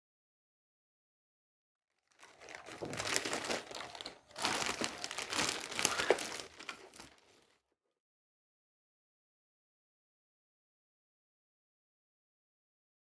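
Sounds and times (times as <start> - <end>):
packaging crinkling: 2.1 - 7.5.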